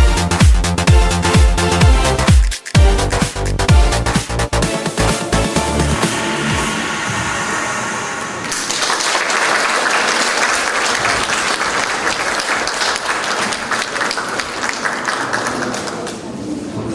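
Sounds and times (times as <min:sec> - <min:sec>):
dance music: 0:00.0 - 0:08.8
audience applauding: 0:08.2 - 0:16.4.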